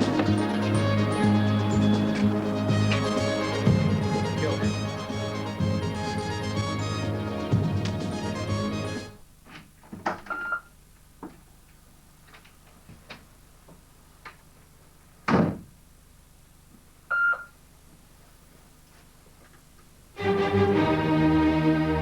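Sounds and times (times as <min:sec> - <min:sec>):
background music: 0:00.0 - 0:09.2, 0:20.2 - 0:22.0.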